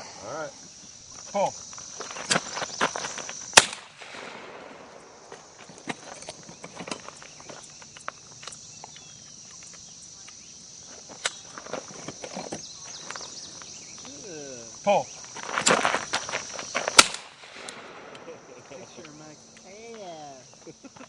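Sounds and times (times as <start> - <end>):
high insect buzz: 0.0 - 21.0
shotgun shot with echo: 3.6 - 5.3, 17.0 - 18.4.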